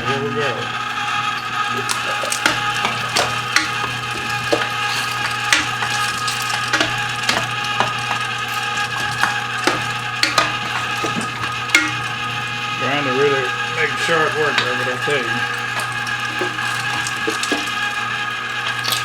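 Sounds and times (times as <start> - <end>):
meat grinder motor humming: 0.0 - 19.0
grinder clicks and knocks: 1.8 - 12.3, 14.5 - 19.0.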